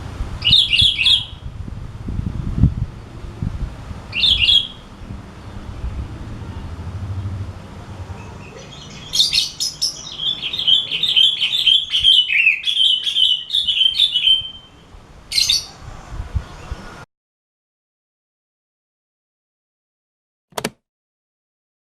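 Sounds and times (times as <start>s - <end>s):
bulbul chirping song: 0.4s - 1.5s, 4.0s - 15.8s
bird short call: 4.1s - 6.8s.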